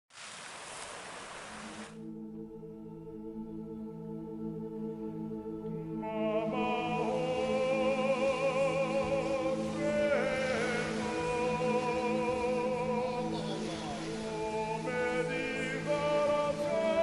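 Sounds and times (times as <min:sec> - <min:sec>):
person singing long notes with vibrato: 0:05.7 - 0:17.0.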